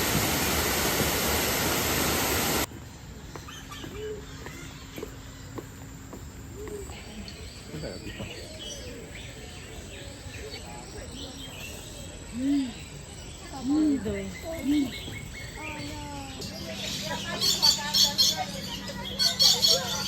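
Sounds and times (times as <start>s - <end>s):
loud steady rushing noise: 0.0s - 2.7s
birds calling and chirping: 3.2s - 20.0s.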